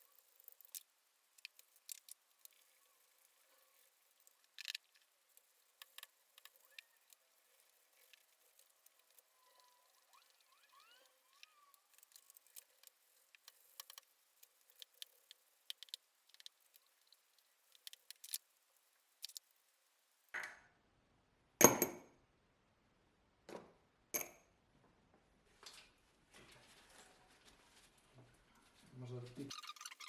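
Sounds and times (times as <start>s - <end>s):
small hard objects clicking: 0.0s - 19.7s.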